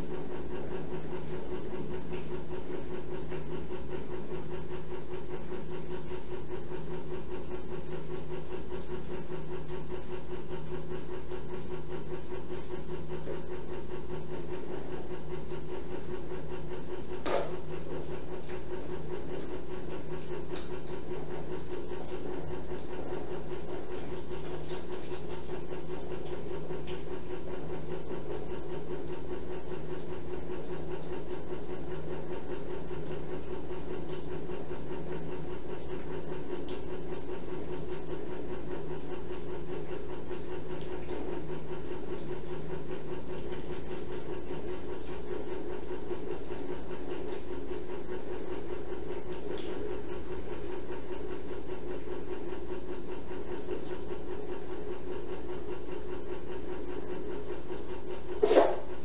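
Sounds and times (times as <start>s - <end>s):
low mechanical hum: 0.0s - 59.0s
short sharp sound: 58.4s - 58.9s.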